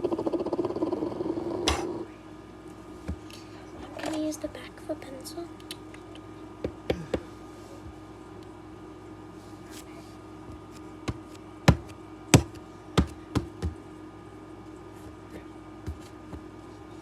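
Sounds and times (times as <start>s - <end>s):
pencil tapping dried slime: 11.1s - 13.8s.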